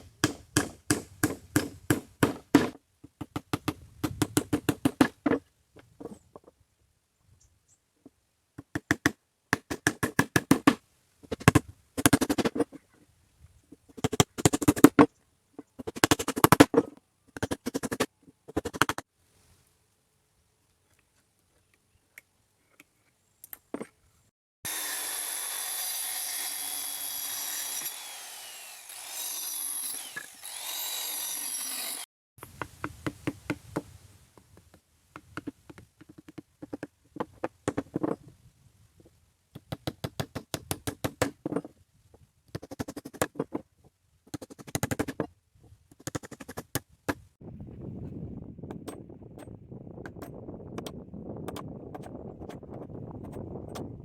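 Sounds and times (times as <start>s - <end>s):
power tool cutting wood: 24.7s - 32.1s.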